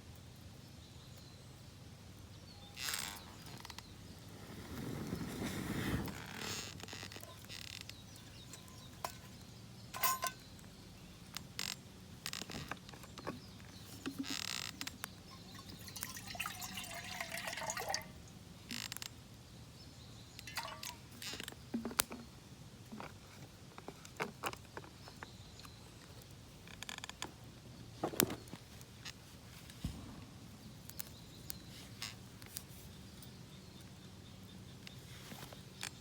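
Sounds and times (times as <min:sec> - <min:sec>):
camping gear clicks and clinks: 0:06.1 - 0:17.7, 0:28.0 - 0:29.8.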